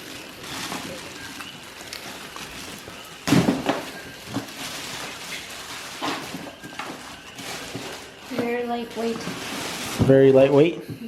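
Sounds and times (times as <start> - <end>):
packaging rustling: 0.0 - 10.3
plastic clatter: 3.2 - 8.6.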